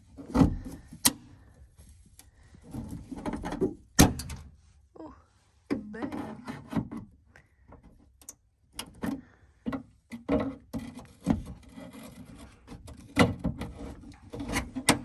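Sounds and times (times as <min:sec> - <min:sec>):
screwdriver scraping plastic: 0:10.1 - 0:15.0.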